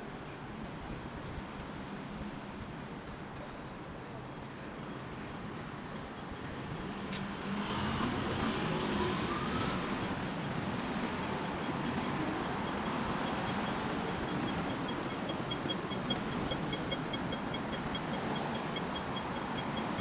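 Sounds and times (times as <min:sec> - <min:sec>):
road traffic hum: 0:04.7 - 0:20.0.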